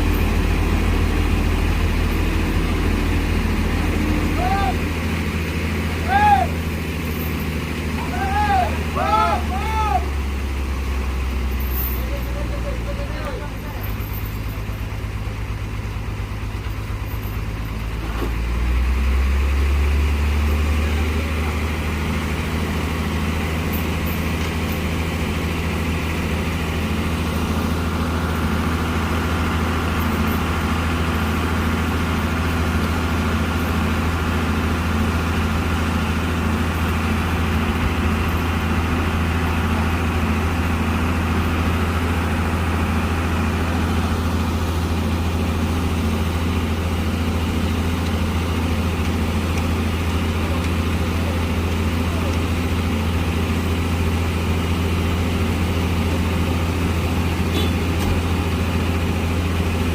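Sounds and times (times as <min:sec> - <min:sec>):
heavy truck engine running: 0:00.0 - 0:59.9.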